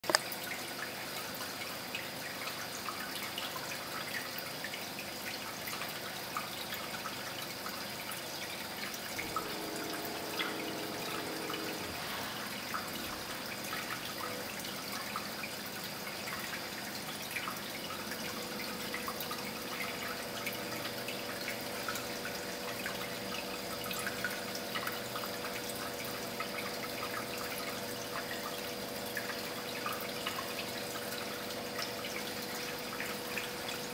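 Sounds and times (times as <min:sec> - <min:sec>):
aquarium water trickling and bubbling: 0:00.0 - 0:33.9
faint hum: 0:09.0 - 0:33.9.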